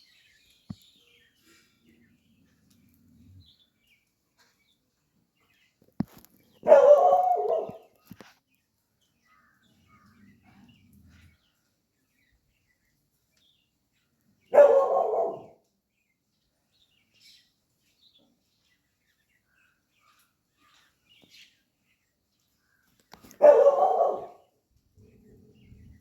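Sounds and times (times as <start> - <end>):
dog barking: 6.6 - 8.0, 14.5 - 15.6, 23.3 - 24.5.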